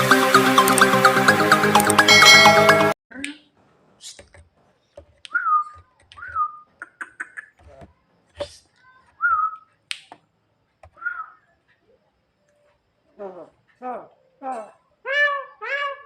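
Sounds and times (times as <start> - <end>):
bird clicks and chattering: 5.6 - 7.6.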